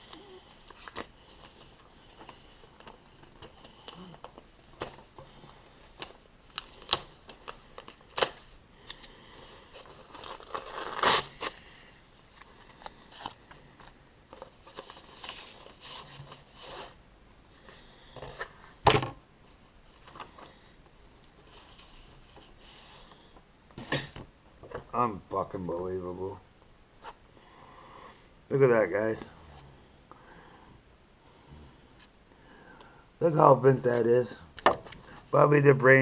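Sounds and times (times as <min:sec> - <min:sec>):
packaging rustling and tearing: 0:00.0 - 0:17.0.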